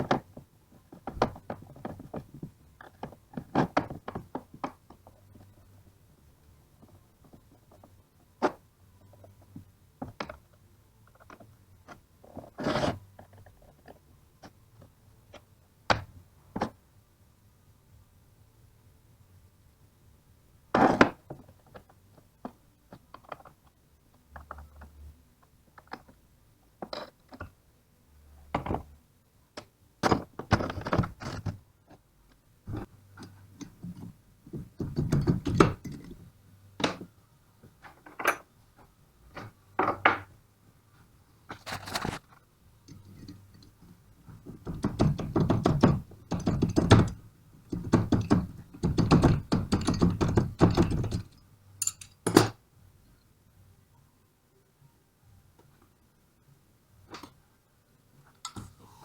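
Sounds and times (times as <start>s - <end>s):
metal tools knocking and clunking: 32.7s - 36.2s, 37.8s - 38.5s, 39.3s - 40.3s, 42.8s - 52.6s.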